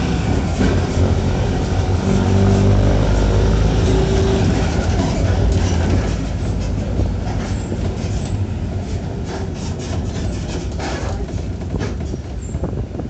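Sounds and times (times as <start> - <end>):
bus diesel engine droning: 0.0 - 9.4.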